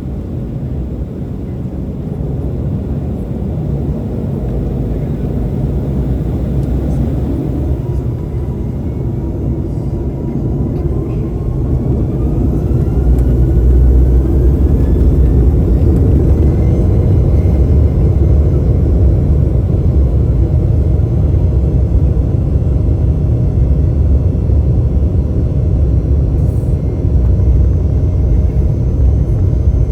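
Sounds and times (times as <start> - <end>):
jet engines spooling up: 2.4 - 23.3
take-off roll rumble: 4.1 - 22.4.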